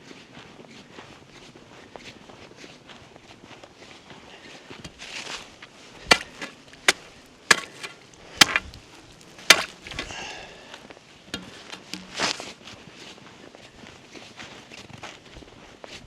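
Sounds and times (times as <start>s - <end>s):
ice crunching: 4.9s - 10.7s, 11.4s - 13.1s
chopping thin ice: 6.1s - 8.7s, 9.4s - 10.1s.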